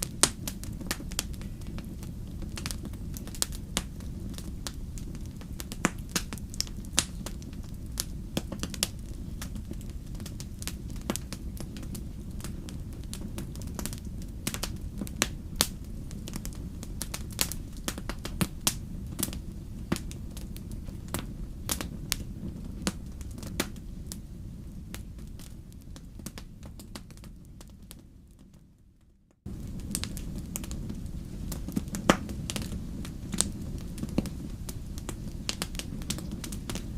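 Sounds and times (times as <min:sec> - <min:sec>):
sharp pops from fire: 0:00.0 - 0:28.0, 0:29.4 - 0:36.9
wood fire crackling: 0:00.0 - 0:36.9.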